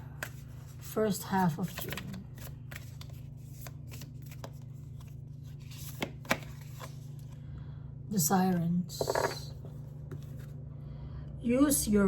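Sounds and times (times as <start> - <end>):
cards shuffled by hand: 1.4 - 7.3.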